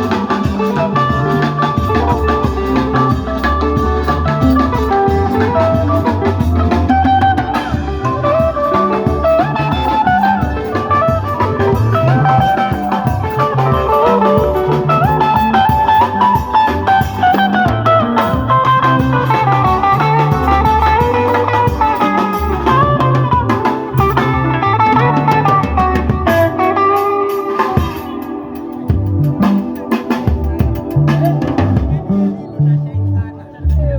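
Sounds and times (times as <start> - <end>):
electric guitar melody: 0.0 - 33.9
live band playing: 0.0 - 33.9.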